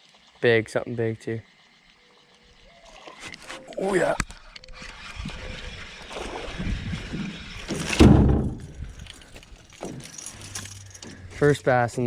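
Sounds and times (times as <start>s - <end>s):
loud thump: 7.7s - 8.7s.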